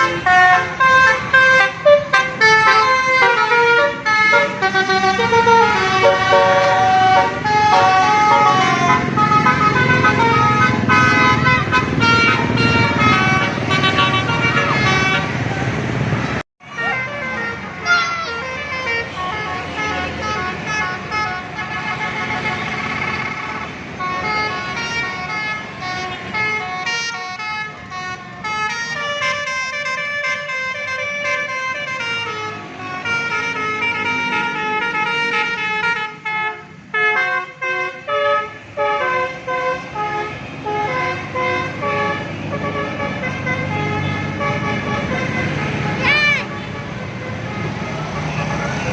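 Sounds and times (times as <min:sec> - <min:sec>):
musical air horn melody: 0:00.0 - 0:15.4, 0:24.2 - 0:48.1.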